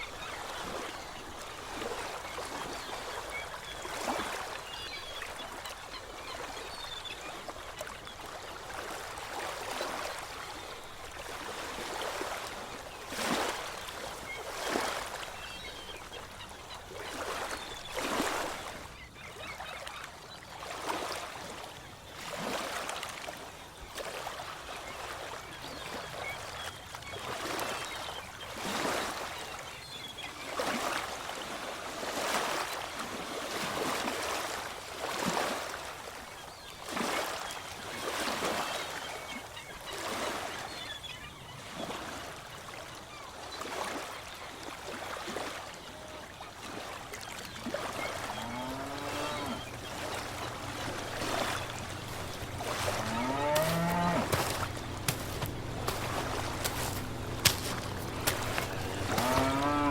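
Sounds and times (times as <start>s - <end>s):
ocean waves washing ashore: 44.6s - 59.9s
drawn-out rising calls: 47.8s - 59.9s
low steady hum: 48.1s - 59.9s.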